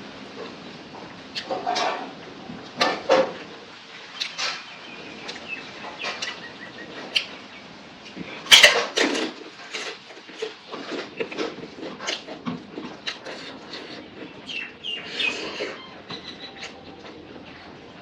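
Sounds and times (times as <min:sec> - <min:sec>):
chewing with mouth smacks: 0:09.7 - 0:17.7.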